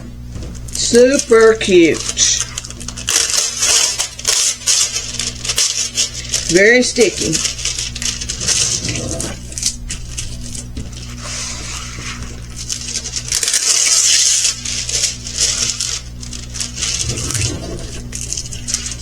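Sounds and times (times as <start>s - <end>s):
low electrical hum: 0.0s - 19.0s
plastic packaging crinkling: 0.6s - 19.0s.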